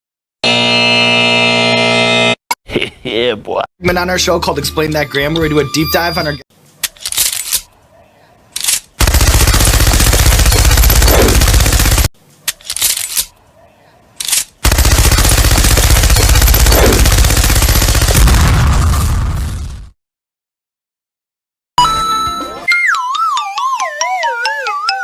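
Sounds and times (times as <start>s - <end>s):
rapid rattle of shots: 8.6s - 12.1s, 14.3s - 18.5s.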